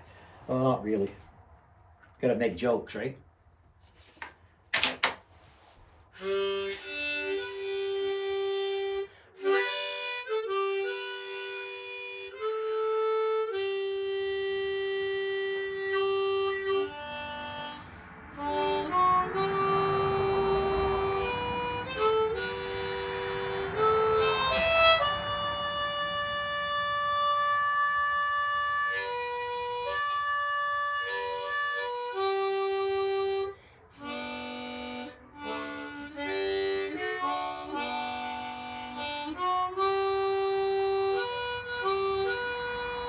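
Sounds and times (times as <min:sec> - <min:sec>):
harmonica playing slow tune: 0:05.6 - 0:43.0.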